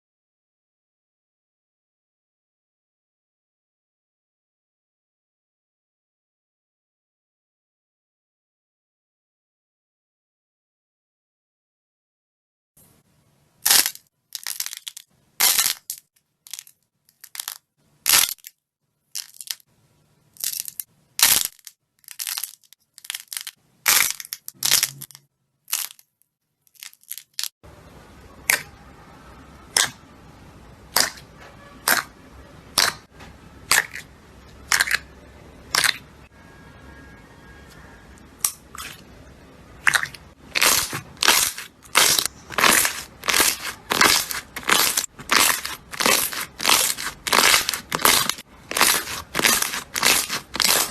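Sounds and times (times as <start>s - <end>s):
slime crackling and popping: 13.6s - 18.5s, 20.4s - 26.1s, 29.7s - 30.0s, 30.9s - 31.2s, 31.8s - 32.1s, 32.7s - 33.0s, 33.6s - 35.0s, 35.7s - 36.0s, 39.8s - 50.9s.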